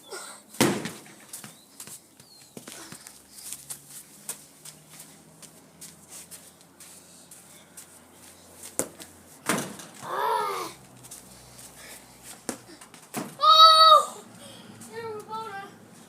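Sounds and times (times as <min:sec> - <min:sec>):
ball thudding: 0:00.6 - 0:01.1, 0:08.8 - 0:10.0
football kicked: 0:00.6 - 0:01.1
person shouting: 0:13.4 - 0:14.2.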